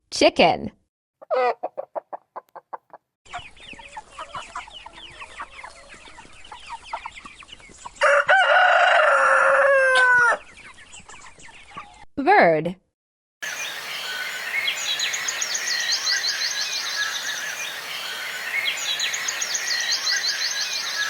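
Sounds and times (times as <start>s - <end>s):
chickens clucking: 1.2s - 12.0s
rooster crowing: 8.0s - 10.4s.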